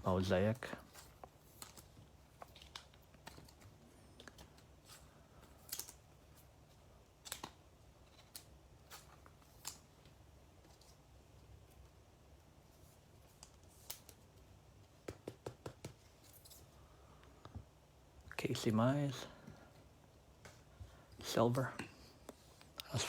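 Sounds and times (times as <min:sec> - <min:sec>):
trading cards clicking and tapping: 0:14.8 - 0:16.2.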